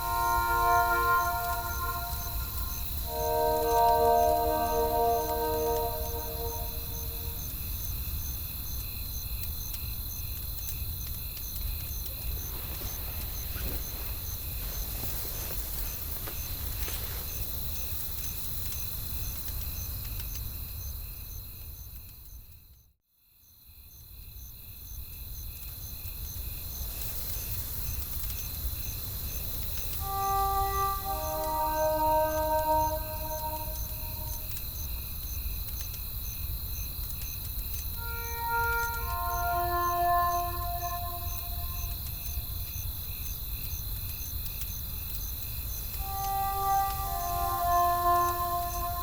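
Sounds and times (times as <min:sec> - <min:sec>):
crickets chirping: 0:00.0 - 0:07.8, 0:29.8 - 0:35.3, 0:36.5 - 0:49.0.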